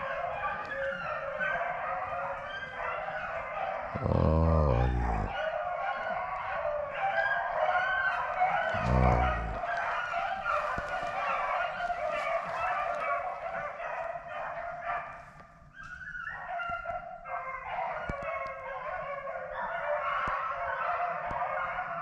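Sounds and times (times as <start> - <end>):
hounds baying: 0.0 - 22.0.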